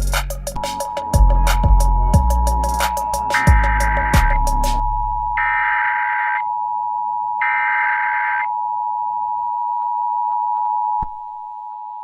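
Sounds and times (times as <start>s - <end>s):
screeching digital data bursts: 0.7s - 6.4s
two-tone electronic beep: 2.9s - 6.7s.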